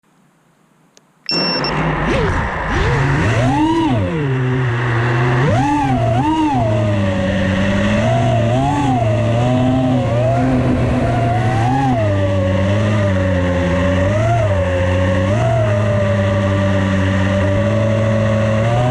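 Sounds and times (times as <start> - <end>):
quadcopter motors whining: 5.4 - 9.4.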